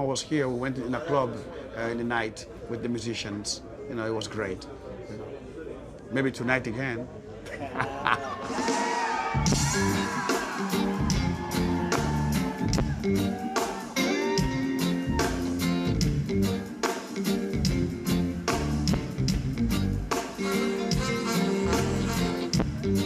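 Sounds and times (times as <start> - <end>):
band music with guitar: 8.6 - 23.0.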